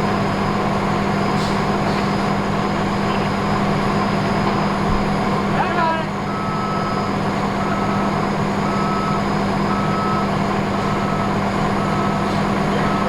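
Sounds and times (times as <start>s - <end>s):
truck engine idling: 0.0s - 13.0s
backup alarm beeping: 6.3s - 13.0s.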